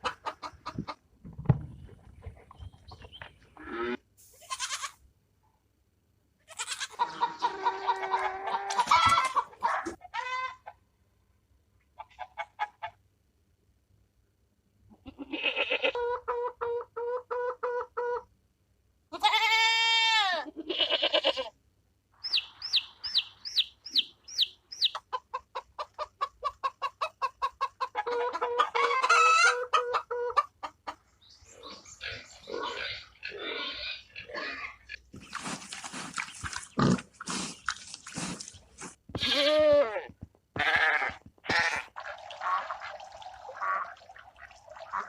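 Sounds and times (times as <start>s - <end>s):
hens clucking: 0.0s - 4.0s, 6.6s - 10.8s, 11.9s - 13.0s, 15.8s - 18.3s, 22.2s - 39.0s
high rising chirps: 22.2s - 25.0s
rough noisy animal sound: 31.0s - 45.0s.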